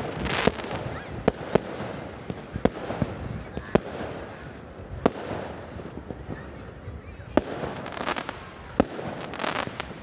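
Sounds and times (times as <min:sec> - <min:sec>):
faint fireworks pops: 0:00.0 - 0:10.0
fireworks crackling: 0:00.0 - 0:10.0
loud fireworks bangs: 0:00.0 - 0:10.0.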